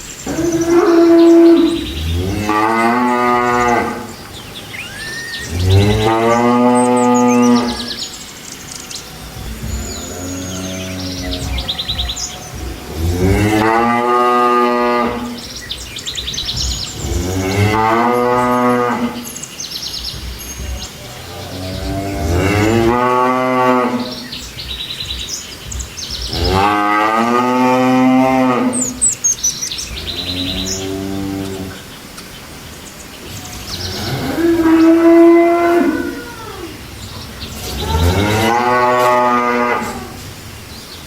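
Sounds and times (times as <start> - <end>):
cattle mooing: 0.2 - 4.2, 4.8 - 8.0, 9.5 - 15.5, 17.0 - 19.2, 21.2 - 24.2, 26.3 - 29.0, 33.7 - 36.9, 37.6 - 40.2.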